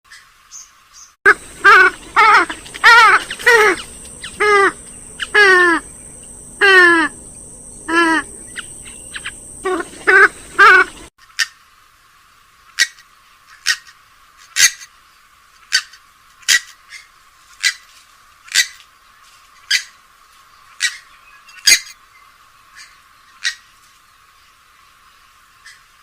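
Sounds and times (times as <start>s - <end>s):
bird giving sharp calls: 1.3s - 11.5s.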